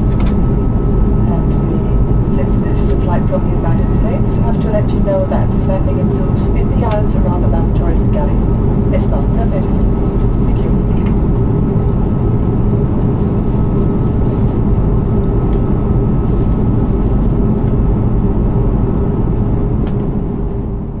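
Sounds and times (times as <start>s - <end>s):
airplane engines droning in cabin: 0.0s - 21.0s.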